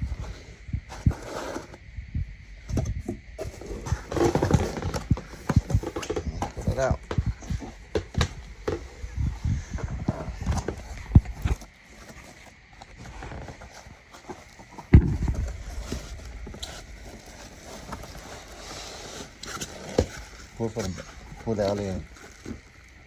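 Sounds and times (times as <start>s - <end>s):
knocks and scrapes on cardboard box: 2.7s - 22.6s
loud thump: 15.0s - 16.6s.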